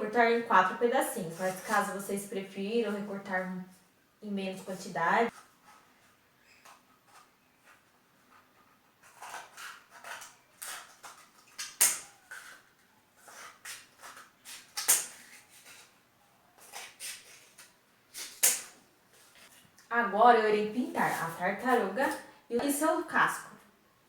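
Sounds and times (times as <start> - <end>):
scissors snipping cardboard: 9.0 - 12.6, 13.2 - 15.8.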